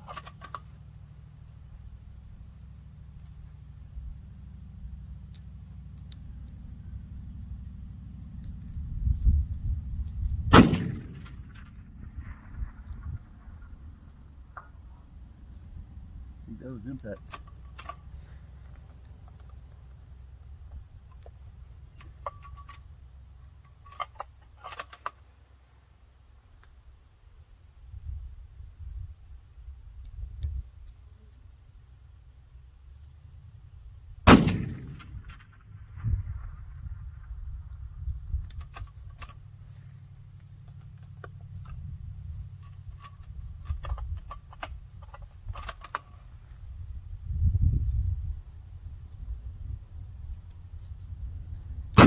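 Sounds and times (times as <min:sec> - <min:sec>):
rifle metallic clicks: 0:00.0 - 0:00.7, 0:10.0 - 0:11.9, 0:17.0 - 0:18.1, 0:21.1 - 0:25.2, 0:34.3 - 0:35.6, 0:42.6 - 0:46.2
low steady rumble: 0:00.0 - 0:52.0
low bump: 0:08.6 - 0:15.5, 0:34.3 - 0:38.7.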